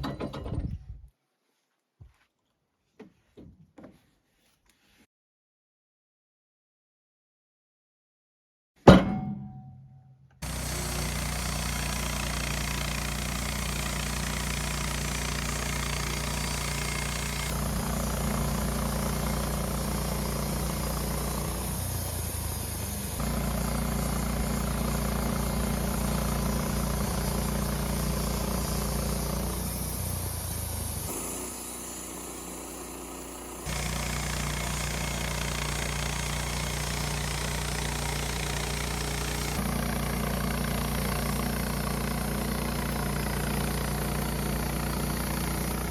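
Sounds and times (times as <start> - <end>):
sawmill engine running: 10.4 - 45.9.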